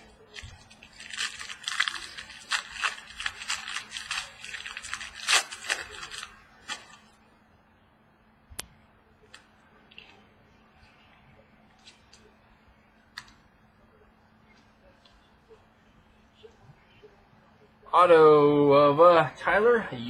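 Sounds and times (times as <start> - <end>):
plastic wrapping tearing and crinkling: 0.0 - 7.2.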